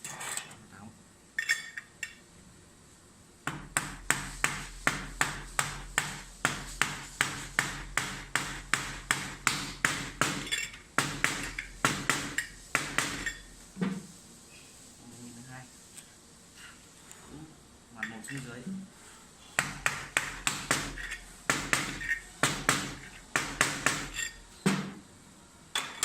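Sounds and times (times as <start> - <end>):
hammer tapping metal bearing: 19.6 - 24.4.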